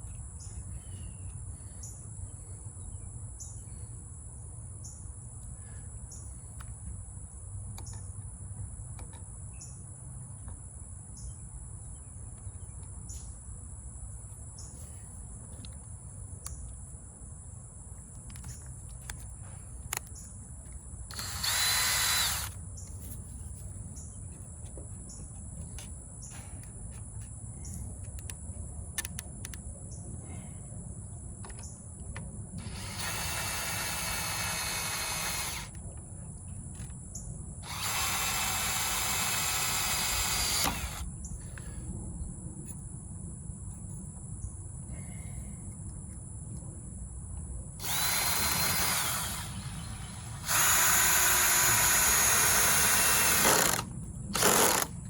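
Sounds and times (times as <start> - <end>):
power drill driving screws: 21.1 - 22.6, 32.6 - 35.7, 37.6 - 41.0, 47.8 - 54.9.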